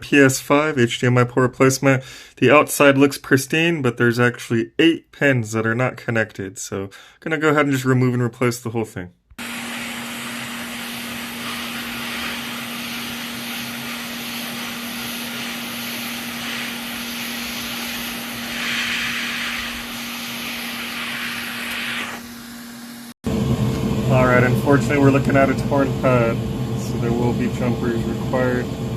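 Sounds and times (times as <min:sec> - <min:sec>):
hot air blower hissing: 0:09.4 - 0:28.9.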